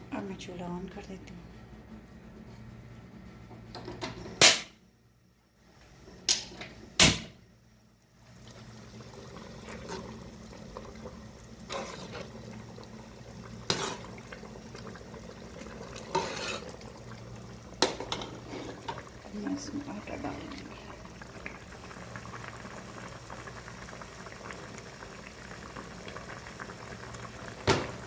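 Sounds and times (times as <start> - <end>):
stew simmering in a pot: 7.5 - 28.0.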